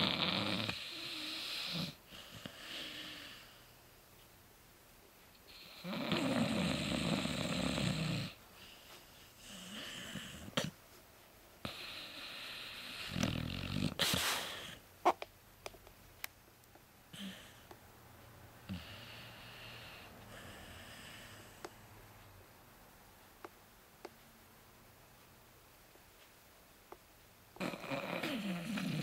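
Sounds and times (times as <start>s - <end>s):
dog snoring: 0.0s - 3.6s, 5.4s - 10.8s, 11.6s - 14.8s, 18.6s - 21.7s, 27.6s - 29.0s.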